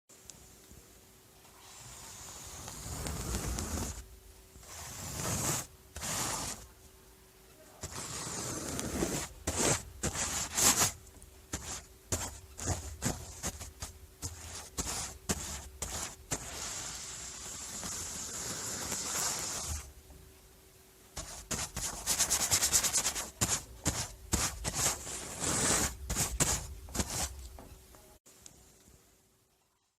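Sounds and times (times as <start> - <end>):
paintbrush strokes on surface: 1.5 - 4.0, 4.6 - 6.8, 7.6 - 19.9, 21.2 - 27.6.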